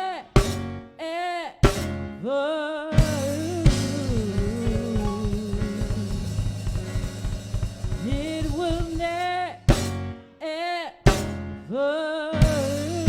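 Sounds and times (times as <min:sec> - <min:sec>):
person singing with vibrato: 0:00.0 - 0:07.1, 0:08.0 - 0:09.7, 0:10.4 - 0:13.0
drum hits: 0:00.4 - 0:00.8, 0:01.6 - 0:02.0, 0:03.0 - 0:10.2, 0:11.1 - 0:11.5, 0:12.4 - 0:13.0
gospel band playing: 0:00.4 - 0:00.8, 0:01.6 - 0:02.2, 0:02.9 - 0:10.2, 0:11.1 - 0:11.6, 0:12.4 - 0:13.0.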